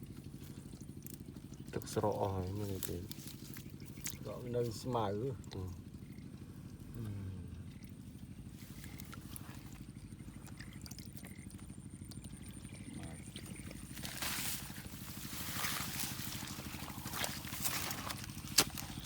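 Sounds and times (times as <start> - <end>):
small engine running: 0.0 - 19.0
water splashing: 8.8 - 11.6, 13.2 - 19.0.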